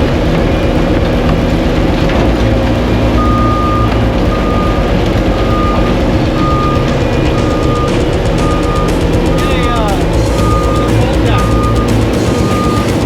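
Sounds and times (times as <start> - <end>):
machine engine running: 0.0 - 13.0
backup alarm beeping: 3.0 - 13.0.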